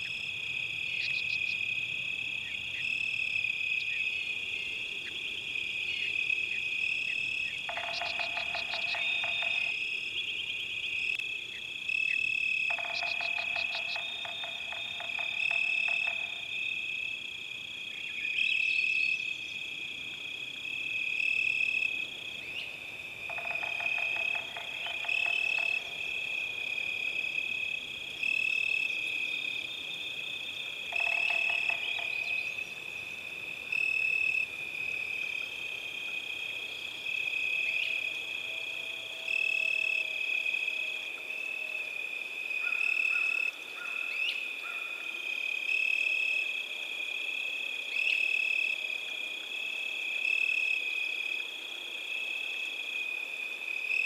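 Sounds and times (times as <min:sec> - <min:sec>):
frogs trilling: 0:00.0 - 0:32.8, 0:36.2 - 0:41.0, 0:42.5 - 0:53.1
frog rattling croak: 0:07.6 - 0:09.8, 0:12.0 - 0:16.6, 0:23.2 - 0:27.5, 0:30.9 - 0:32.5.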